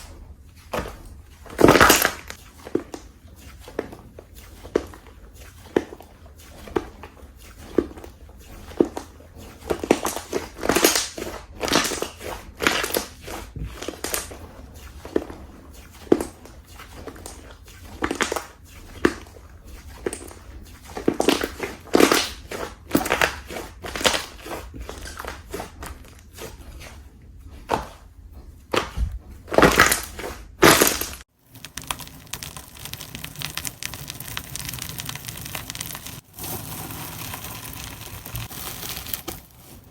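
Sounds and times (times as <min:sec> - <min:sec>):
slime crackling and popping: 0:29.6 - 0:39.5.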